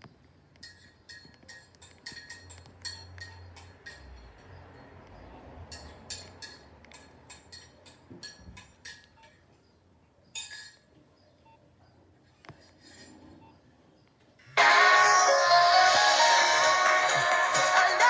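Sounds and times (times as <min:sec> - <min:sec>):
phone ringtone melody: 0:14.6 - 0:18.0.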